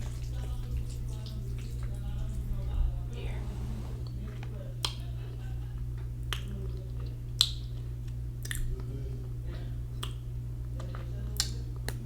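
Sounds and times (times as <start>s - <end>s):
steady low hum: 0.0s - 12.0s
mouth clicks and lip smacks: 8.4s - 8.7s.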